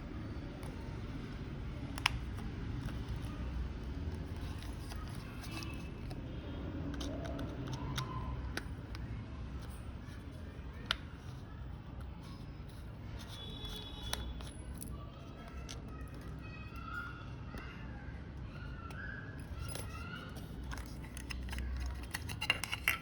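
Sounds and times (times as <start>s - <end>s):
low background noise: 0.0s - 23.0s.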